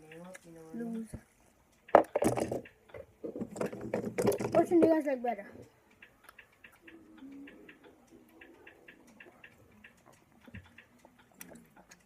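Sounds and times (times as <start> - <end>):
faint quick ticking: 5.6 - 12.0.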